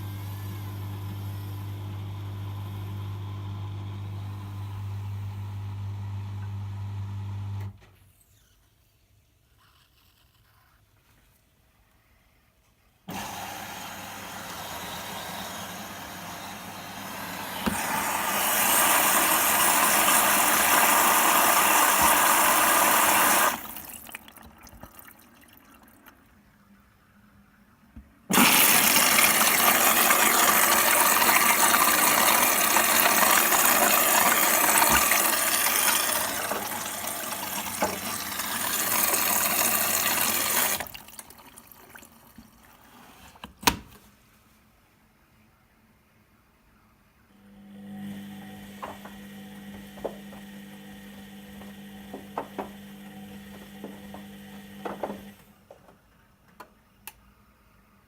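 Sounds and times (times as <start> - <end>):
water rushing into washing machine: 13.1 - 26.4, 28.3 - 43.3, 47.8 - 55.4
inlet valve mains hum: 28.3 - 40.9.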